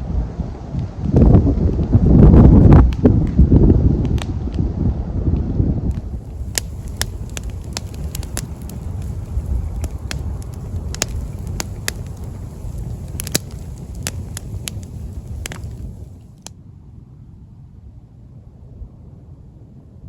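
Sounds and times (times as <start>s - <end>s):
wind buffeting microphone: 0.0s - 16.5s
sharp crackles: 5.9s - 16.5s.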